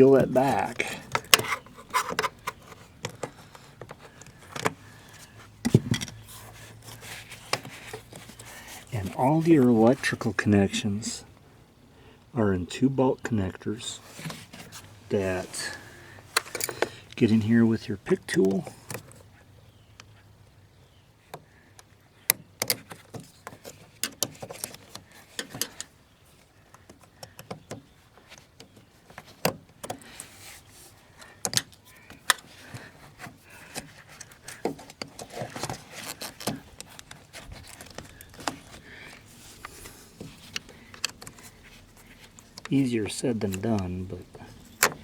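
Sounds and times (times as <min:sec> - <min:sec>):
pick tool clicking on plastic connectors: 0:31.2 - 0:32.9, 0:40.5 - 0:41.5.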